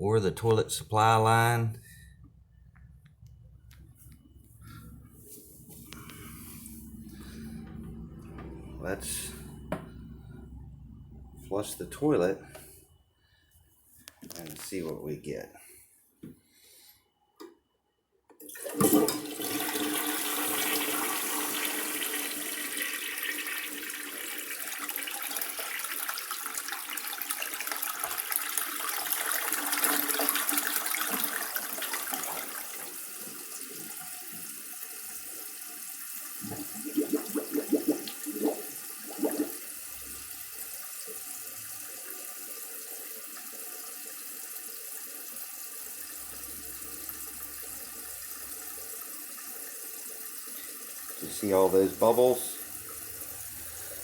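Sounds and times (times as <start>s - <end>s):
toilet flushing: 4.2s - 13.4s, 18.4s - 54.0s
toilet tank refilling hiss: 18.4s - 54.0s
water gurgles: 36.3s - 40.6s.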